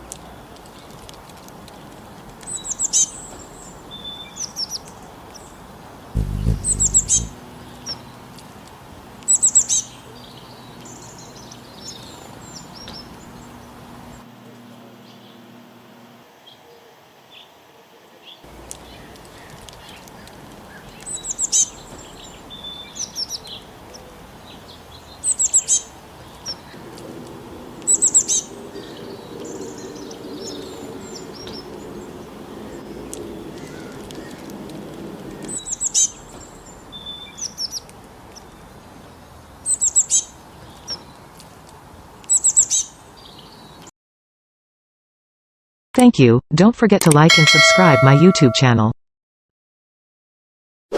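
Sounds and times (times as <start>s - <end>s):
small birds chirping: 0.0s - 14.2s, 18.5s - 41.4s, 42.2s - 43.9s
low steady hum: 6.2s - 8.3s.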